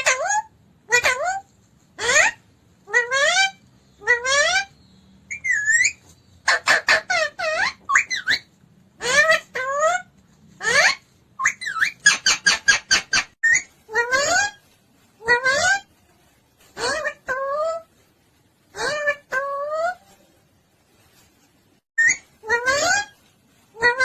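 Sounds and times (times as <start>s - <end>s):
parrot squawking: 0.0s - 15.9s, 16.6s - 17.9s, 18.7s - 20.2s, 22.0s - 23.2s, 23.8s - 24.0s
parrot whistling: 3.0s - 9.6s, 10.6s - 14.5s.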